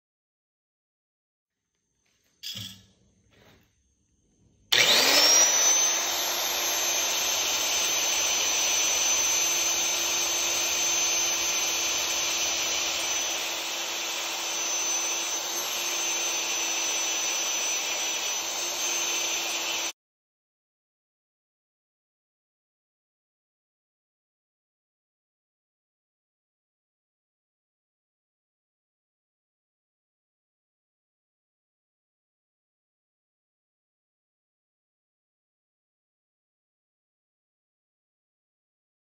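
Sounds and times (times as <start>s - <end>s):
high-speed motor whining: 4.7s - 19.9s.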